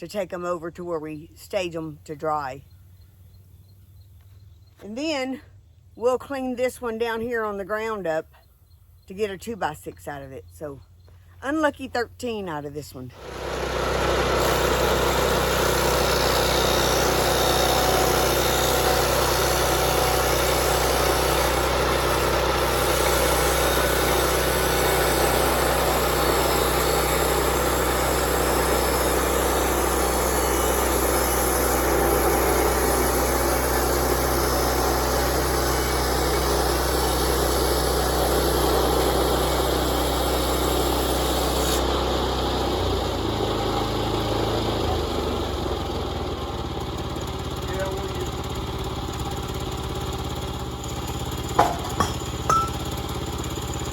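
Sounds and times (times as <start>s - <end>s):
sawmill gas engine under load: 12.4s - 53.9s
band blade cutting log hiss: 14.4s - 41.9s.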